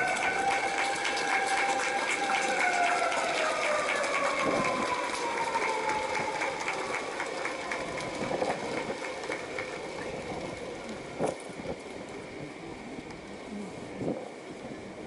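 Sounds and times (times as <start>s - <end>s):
hand claps: 0.0s - 9.7s
crowd noise: 0.0s - 15.0s.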